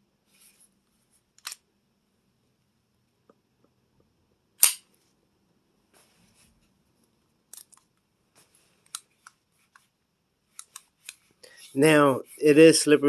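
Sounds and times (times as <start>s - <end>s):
pistol clicks: 4.6s - 4.8s.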